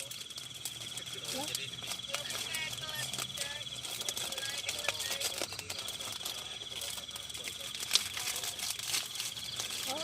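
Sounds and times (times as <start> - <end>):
insect trilling: 0.0 - 10.0.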